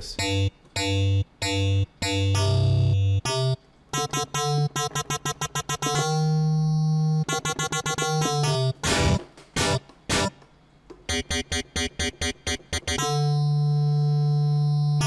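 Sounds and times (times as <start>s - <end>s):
synth bass notes: 0.0s - 3.6s.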